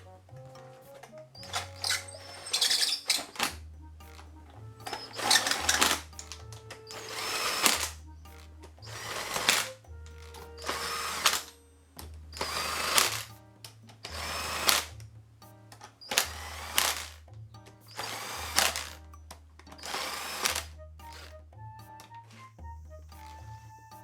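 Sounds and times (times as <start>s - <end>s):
background music with bass line: 0.0s - 24.0s
short whirring bursts: 1.4s - 3.6s, 4.8s - 8.0s, 8.8s - 11.6s, 12.4s - 13.3s, 14.0s - 14.9s, 16.0s - 17.2s, 17.9s - 19.0s, 19.8s - 21.4s.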